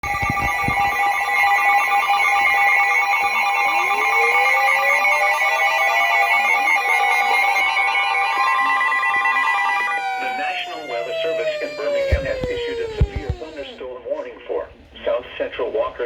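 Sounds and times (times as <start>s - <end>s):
electronic two-tone alarm: 0.0s - 13.8s
tone gliding upward: 3.6s - 13.8s.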